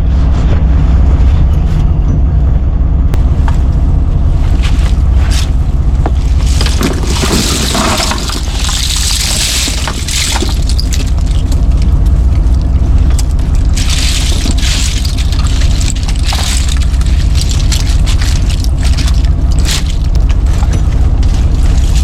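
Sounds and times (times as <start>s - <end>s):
boat engine droning: 0.0s - 22.0s
water splashing: 6.2s - 22.0s.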